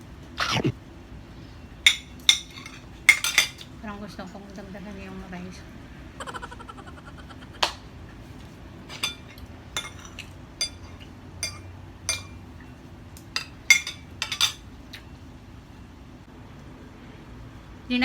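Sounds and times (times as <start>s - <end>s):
metal spoon clinking against dishes: 1.8s - 3.7s, 8.9s - 14.7s.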